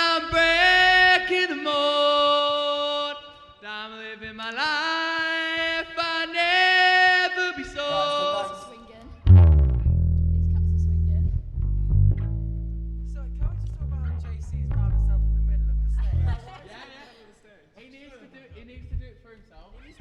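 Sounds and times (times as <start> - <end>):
person singing unaccompanied: 0.0 - 9.0.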